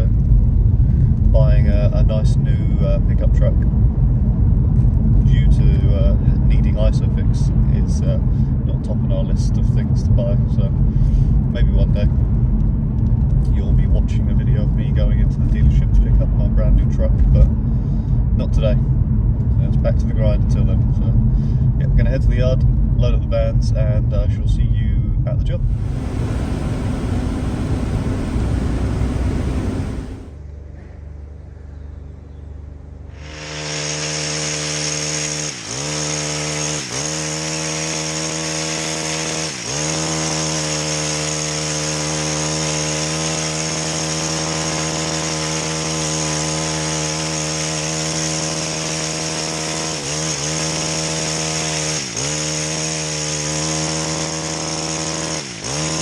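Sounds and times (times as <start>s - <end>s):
car road rumble: 0.0s - 23.0s, 25.1s - 30.5s
chainsaw running at high revs: 25.7s - 30.4s, 33.2s - 56.0s.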